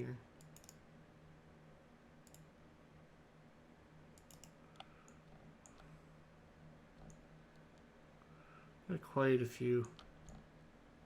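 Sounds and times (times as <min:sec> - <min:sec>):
low steady hum: 0:00.0 - 0:11.0
computer mouse clicks: 0:00.4 - 0:00.8, 0:02.2 - 0:02.5, 0:04.1 - 0:06.0, 0:07.0 - 0:07.9, 0:09.8 - 0:10.5.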